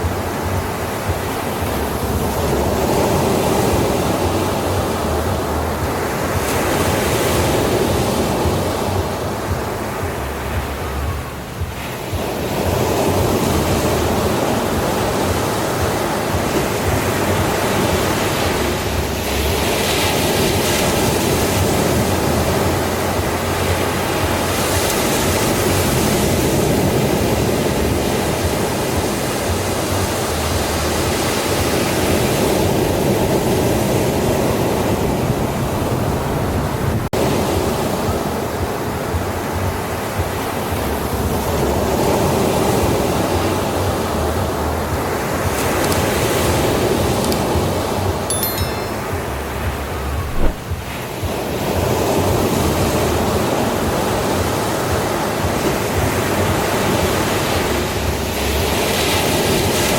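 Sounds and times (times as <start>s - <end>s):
ocean surf washing onto beach: 0.0s - 59.9s
waves breaking: 0.0s - 59.9s.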